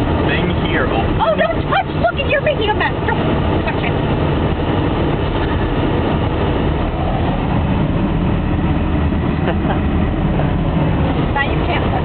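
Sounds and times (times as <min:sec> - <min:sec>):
car cabin noise while driving: 0:00.0 - 0:12.0.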